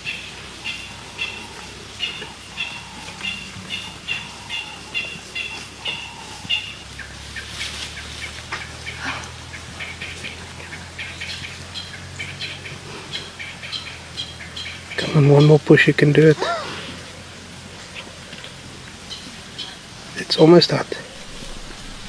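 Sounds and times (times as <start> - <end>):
bird chirping: 0.0 - 17.2, 19.0 - 22.0
faint low hum: 20.8 - 22.0.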